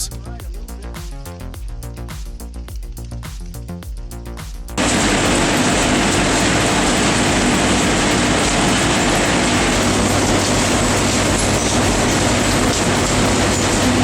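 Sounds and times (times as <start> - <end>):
low hum: 4.2 - 14.0
heavy machinery din: 4.8 - 14.0.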